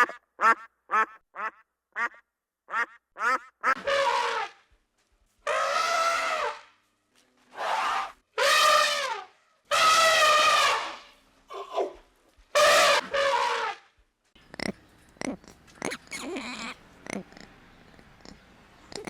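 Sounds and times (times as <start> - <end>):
animal calling: 14.4 - 19.0.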